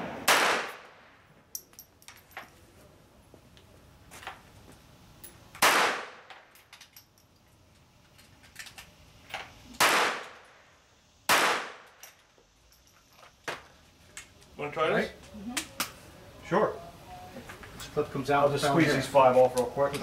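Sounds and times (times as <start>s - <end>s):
gunshots with echo: 0.0s - 0.8s.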